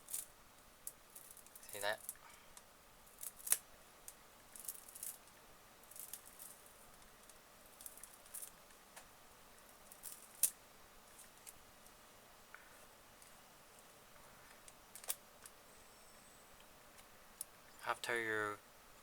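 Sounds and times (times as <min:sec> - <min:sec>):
small plastic parts clicking: 0:14.6 - 0:15.6.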